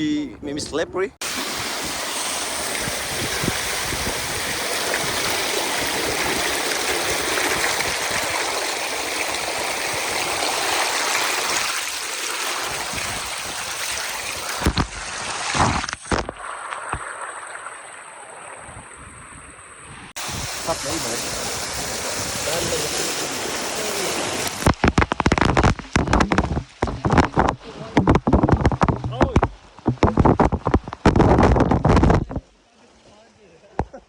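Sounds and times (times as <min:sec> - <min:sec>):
waterfall rushing: 0:01.2 - 0:14.7, 0:20.2 - 0:30.4
sharp knocks: 0:24.6 - 0:32.5.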